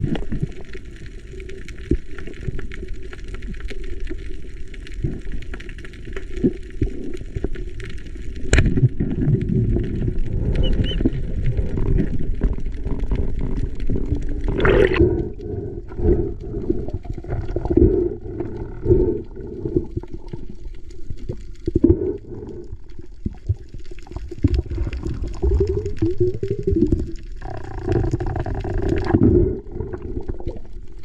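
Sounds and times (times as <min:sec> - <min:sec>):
underwater rumble of moving water: 0:00.0 - 0:31.0
underwater clicks: 0:05.0 - 0:23.4
water rushing: 0:09.7 - 0:15.2.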